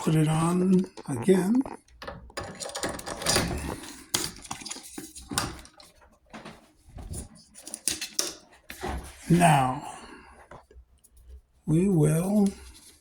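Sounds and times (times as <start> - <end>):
plastic and metal rustling: 0.0 - 9.6
film reel clicking and knocking: 1.9 - 5.9.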